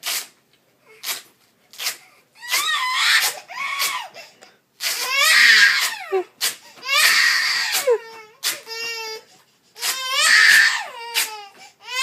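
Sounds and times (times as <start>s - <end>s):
velcro ripping open: 0.0s - 4.0s, 7.6s - 8.7s, 9.8s - 11.4s
small child screaming and crying: 2.4s - 4.2s, 4.8s - 12.0s.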